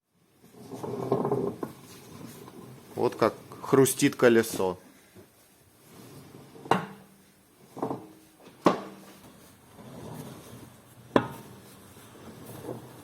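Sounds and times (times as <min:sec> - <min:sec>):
soft grinding rustle: 0:00.4 - 0:06.7, 0:09.0 - 0:13.0.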